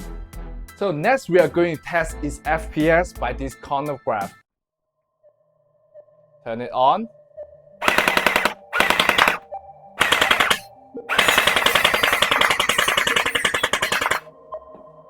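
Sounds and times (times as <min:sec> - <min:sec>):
toy blaster firing full auto: 0:07.8 - 0:09.4, 0:10.0 - 0:14.2.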